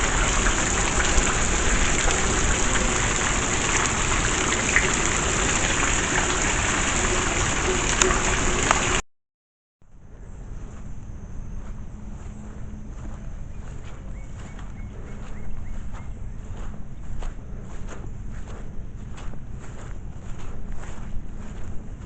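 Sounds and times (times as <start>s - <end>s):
heavy rain falling: 0.0s - 9.0s.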